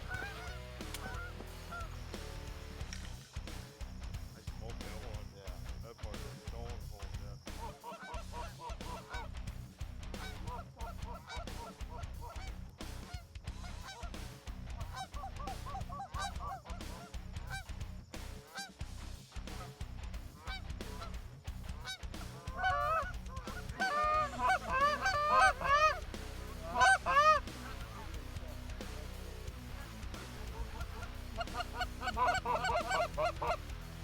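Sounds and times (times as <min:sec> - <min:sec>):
geese honking: 0:00.0 - 0:02.1, 0:07.6 - 0:09.3, 0:14.9 - 0:17.0, 0:21.8 - 0:34.0.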